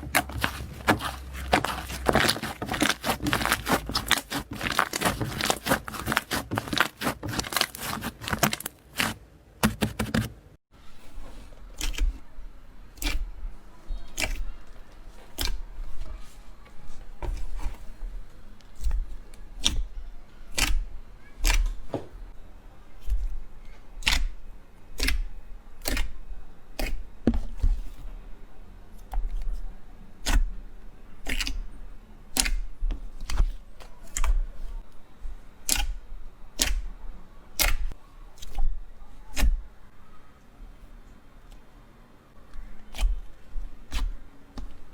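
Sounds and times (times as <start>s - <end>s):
slime crackling: 0.0s - 9.2s.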